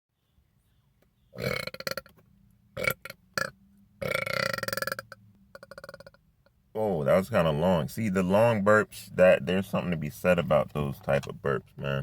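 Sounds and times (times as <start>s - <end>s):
man burping: 1.4s - 2.1s, 2.8s - 6.2s
man talking: 6.8s - 12.0s.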